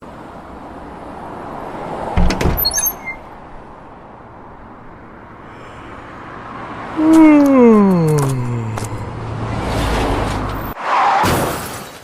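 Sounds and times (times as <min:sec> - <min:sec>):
high-pitched squeaks: 0:02.6 - 0:03.3.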